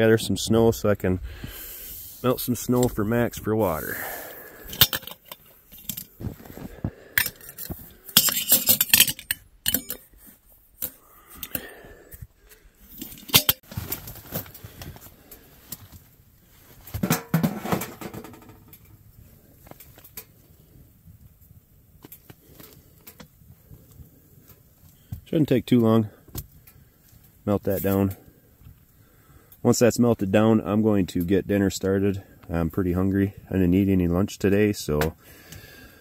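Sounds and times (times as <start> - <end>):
metal pot clanking: 7.2 - 10.1, 13.0 - 13.6, 17.0 - 18.5.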